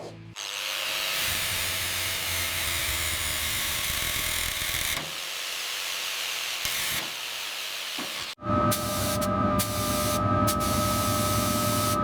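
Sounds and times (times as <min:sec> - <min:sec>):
workshop tool hissing: 0:04.5 - 0:12.0.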